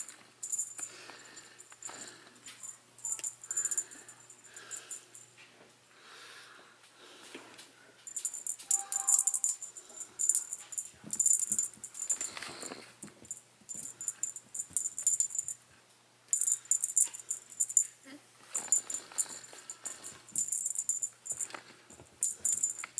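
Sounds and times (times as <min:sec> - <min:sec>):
small bells on a cat toy shaking: 0:00.0 - 0:05.3, 0:08.1 - 0:15.6, 0:16.3 - 0:22.9.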